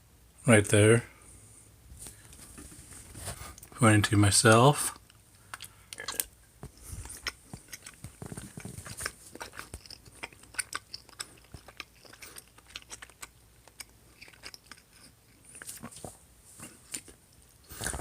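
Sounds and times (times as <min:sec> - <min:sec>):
person chewing food: 0:04.9 - 0:18.0.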